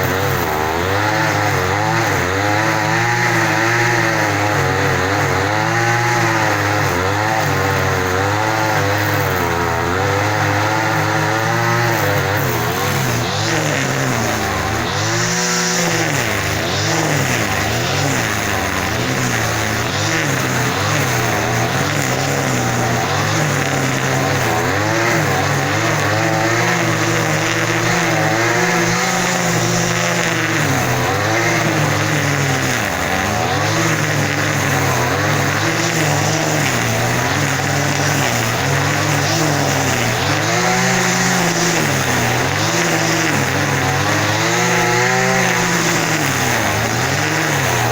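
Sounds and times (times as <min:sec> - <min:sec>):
small engine revving: 0:00.0 - 0:47.9.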